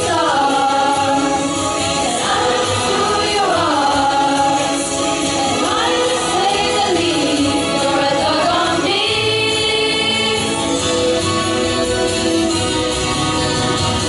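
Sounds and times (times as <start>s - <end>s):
choir of young voices singing: 0.0s - 10.9s.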